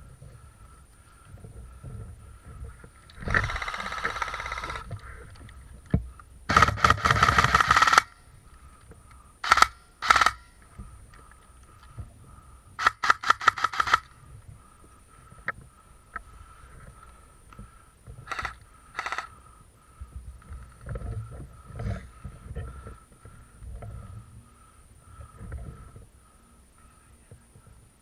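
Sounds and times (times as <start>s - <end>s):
airsoft gun firing bursts: 3.2s - 5.0s, 6.5s - 8.2s, 9.4s - 10.5s, 12.8s - 14.2s, 18.2s - 19.3s.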